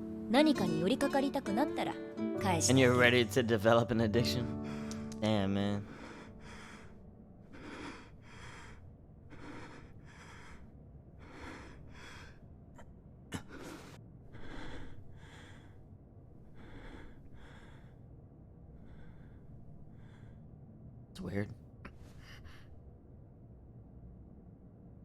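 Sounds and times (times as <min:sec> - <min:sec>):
person breathing heavily: 0:04.5 - 0:20.7, 0:21.9 - 0:22.8
sharp click: 0:04.8 - 0:05.2.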